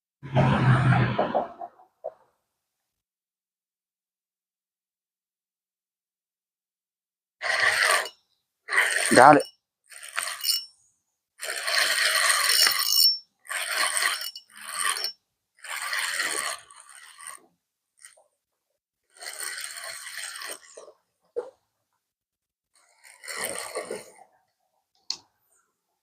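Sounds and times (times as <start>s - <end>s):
fishing reel cranking: 7.4s - 10.7s, 11.4s - 18.2s, 19.1s - 20.9s, 22.8s - 24.2s.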